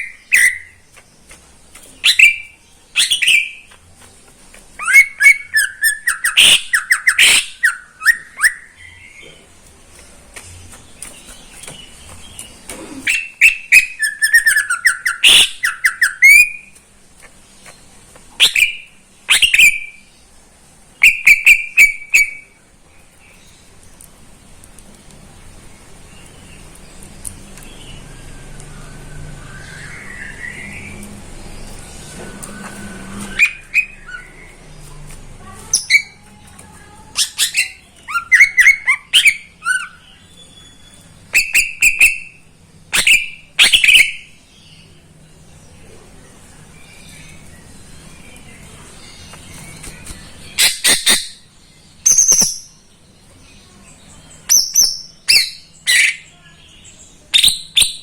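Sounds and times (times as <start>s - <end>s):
bird singing chips and whistles: 0.0s - 3.8s, 4.7s - 9.1s, 11.0s - 16.8s, 18.4s - 20.0s, 21.0s - 22.6s, 27.7s - 34.7s, 37.1s - 44.3s, 49.3s - 52.8s, 54.4s - 56.3s, 57.3s - 58.0s.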